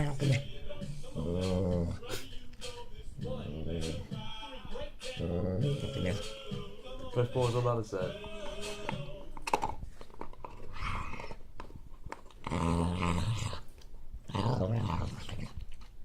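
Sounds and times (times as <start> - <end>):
dog growling: 0.0 - 2.2, 5.2 - 6.2, 10.4 - 11.5, 12.3 - 15.9.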